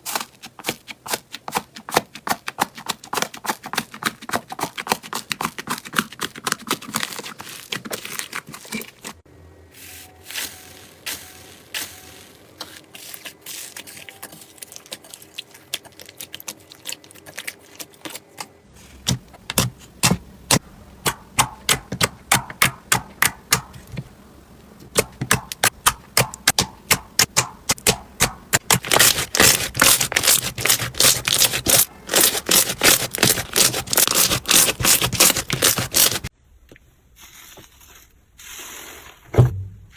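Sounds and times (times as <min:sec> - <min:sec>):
slime crackling and popping: 0:28.6 - 0:36.3.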